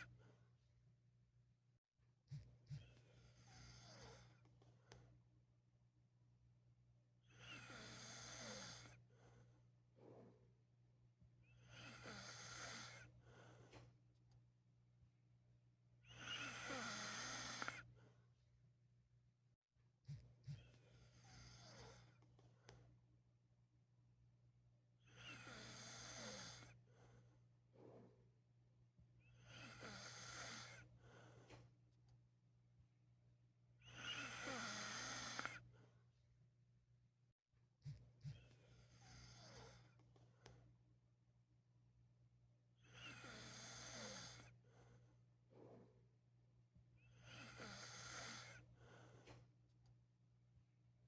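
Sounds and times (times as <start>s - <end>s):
faint breath: 2.3s - 5.2s, 7.2s - 10.7s, 11.4s - 14.1s, 25.0s - 28.5s, 29.2s - 31.8s, 42.8s - 46.1s, 47.0s - 49.6s
man snoring: 7.4s - 8.9s, 11.7s - 13.0s, 16.2s - 17.8s, 25.2s - 26.7s, 29.5s - 30.8s, 34.0s - 35.6s, 43.0s - 44.5s, 47.2s - 48.6s.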